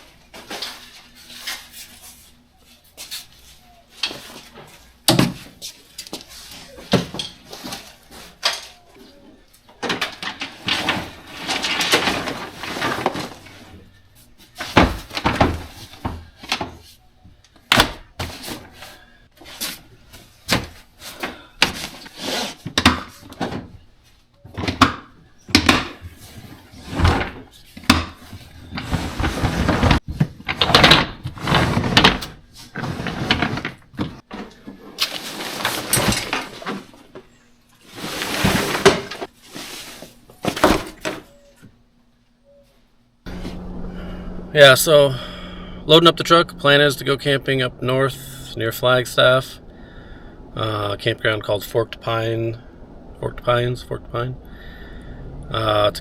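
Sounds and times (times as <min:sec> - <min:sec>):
knocks and clunks: 0:43.3 - 0:56.0.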